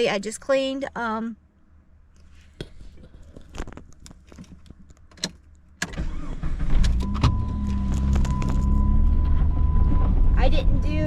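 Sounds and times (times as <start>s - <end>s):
car engine starting: 4.3s - 11.0s.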